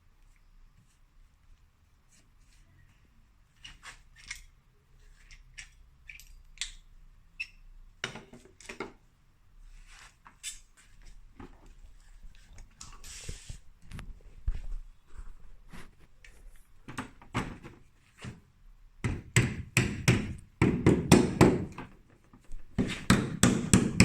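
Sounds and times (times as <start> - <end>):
tools and parts clicking: 3.6 - 4.6, 5.2 - 7.6.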